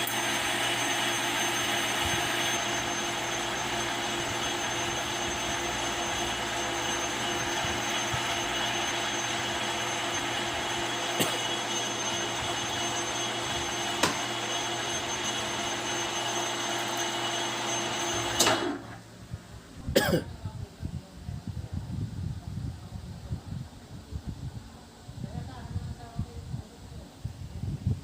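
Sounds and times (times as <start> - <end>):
lathe whirring: 0.0 - 19.2.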